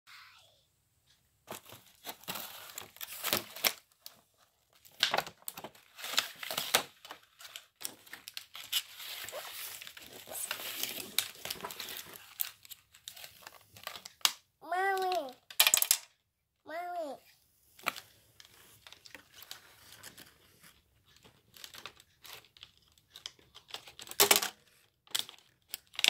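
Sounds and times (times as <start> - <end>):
packaging crinkling and tearing: 1.5 - 15.2, 21.0 - 26.0.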